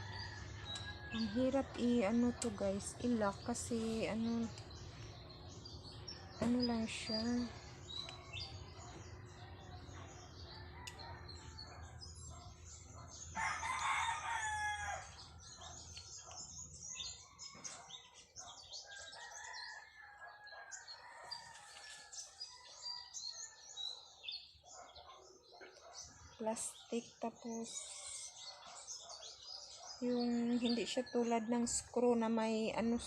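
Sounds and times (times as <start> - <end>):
small birds chirping: 0.0 - 33.0
rooster crowing: 13.4 - 15.2.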